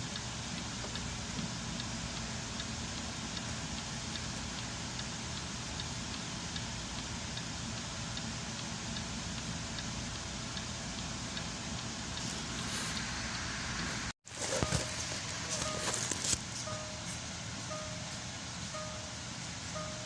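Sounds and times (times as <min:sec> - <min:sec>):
light regular ticking: 0:00.0 - 0:12.4, 0:16.6 - 0:20.0.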